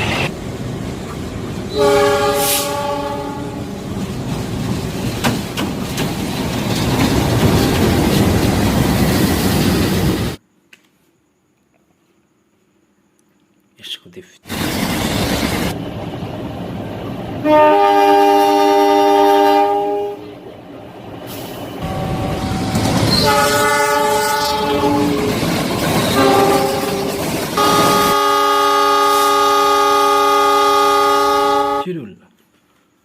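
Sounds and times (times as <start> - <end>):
moving train rumble and clatter: 0.0 - 10.4, 14.4 - 31.7
train horn blasts: 1.7 - 3.7, 17.4 - 20.3, 21.8 - 25.4, 26.1 - 31.9.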